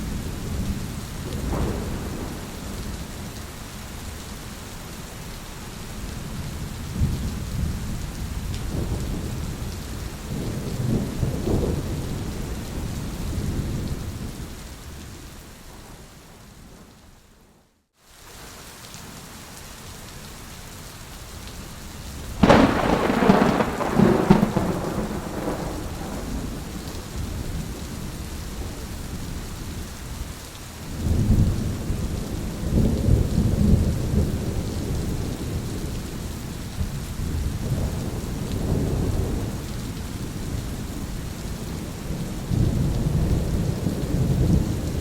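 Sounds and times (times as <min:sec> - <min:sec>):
thunder rumbling: 0:00.0 - 0:03.3, 0:06.9 - 0:14.3, 0:22.4 - 0:29.5
steady rain: 0:00.0 - 0:45.0.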